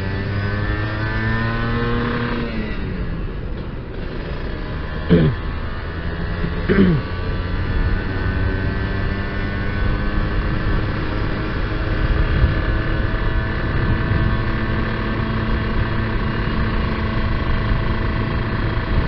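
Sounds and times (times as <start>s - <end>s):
two-stroke motorcycle engine: 0.0s - 19.0s
wind rumble on microphone: 7.6s - 19.0s.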